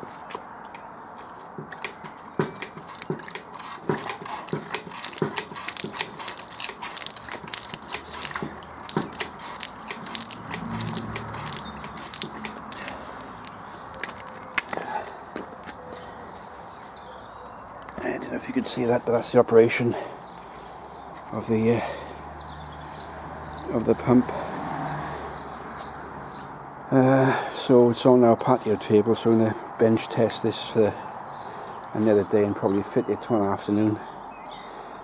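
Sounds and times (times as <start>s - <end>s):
pump clicking and knocking: 0.7s - 15.5s.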